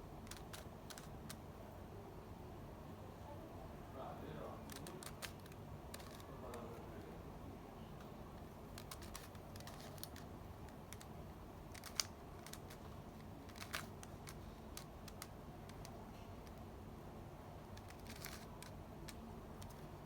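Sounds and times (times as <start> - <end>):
cube and packaging clicks: 0.2 - 1.4, 4.6 - 6.8, 8.7 - 16.6, 17.8 - 20.0.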